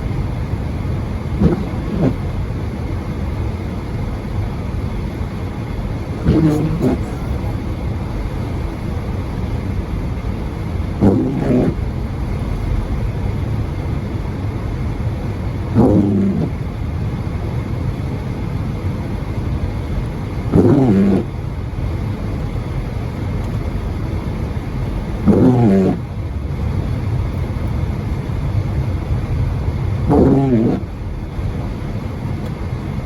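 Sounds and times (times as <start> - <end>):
car cabin road and engine noise: 0.0 - 33.0
windshield wipers squeaking: 1.4 - 2.3, 6.1 - 7.9, 11.0 - 11.8, 15.8 - 16.6, 20.5 - 21.2, 30.1 - 30.8.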